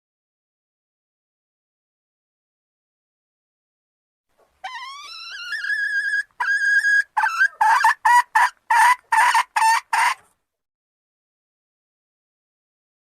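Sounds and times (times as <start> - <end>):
hen cackling: 4.6 - 10.3.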